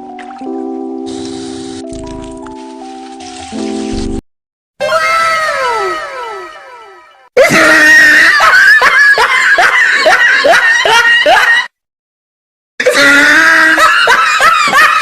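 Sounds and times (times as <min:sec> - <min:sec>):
high-pitched laughter: 0:04.9 - 0:11.7, 0:12.8 - 0:15.0.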